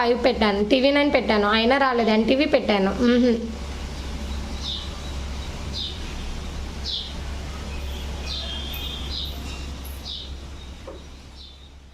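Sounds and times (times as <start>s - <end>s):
steady low hum: 0.0s - 11.9s
bird chirping: 3.9s - 11.9s.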